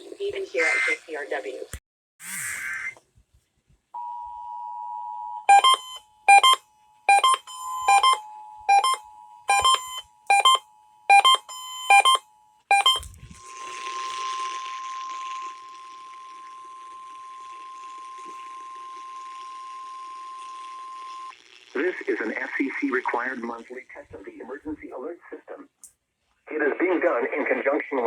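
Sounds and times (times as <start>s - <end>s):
radio hiss: 0.0s - 1.8s, 13.3s - 25.7s, 26.5s - 28.0s
single steady tone: 4.0s - 13.7s
steady two-tone signal: 5.4s - 23.8s
sharp beeps: 5.5s - 13.0s.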